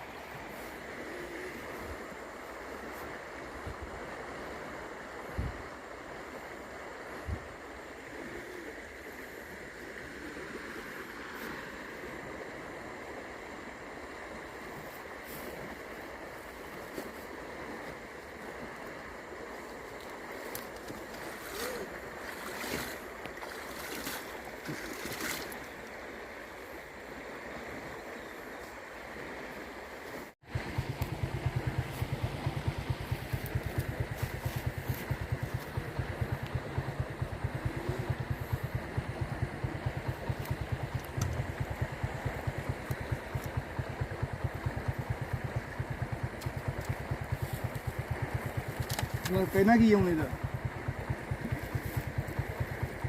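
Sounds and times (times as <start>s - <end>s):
wind noise: 0.0s - 16.7s, 30.4s - 53.0s
water noise: 0.0s - 53.0s
motor throbbing: 30.5s - 53.0s.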